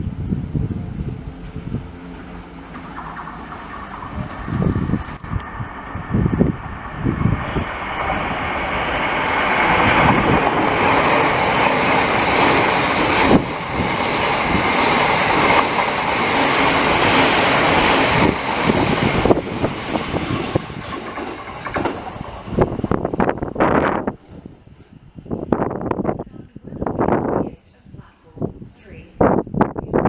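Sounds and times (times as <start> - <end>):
train wheels on rails: 0.9 - 26.1.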